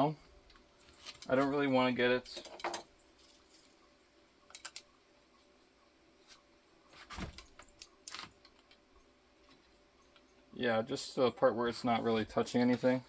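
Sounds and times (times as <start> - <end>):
faint handling noise: 11.9 - 13.0.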